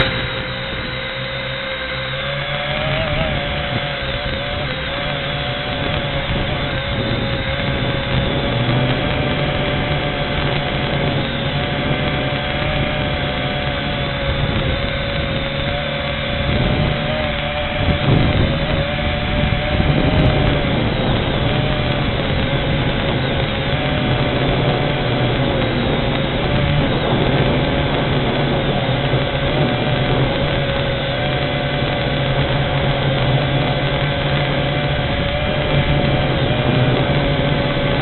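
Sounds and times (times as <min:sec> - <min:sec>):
drone motors whining: 0:00.0 - 0:38.0
wind buffeting microphone: 0:00.0 - 0:38.0.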